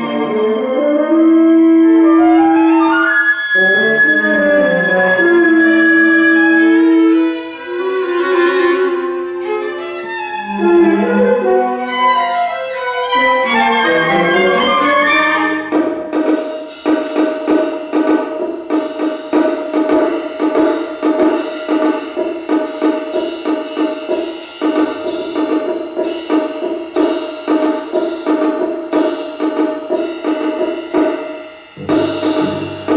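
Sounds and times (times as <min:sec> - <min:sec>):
chamber ensemble playing classical music: 0:00.0 - 0:16.1, 0:31.8 - 0:32.9.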